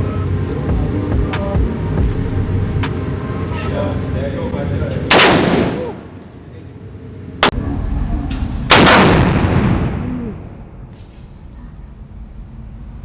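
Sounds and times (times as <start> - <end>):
pistol shots with ringing tail: 5.1 - 6.0.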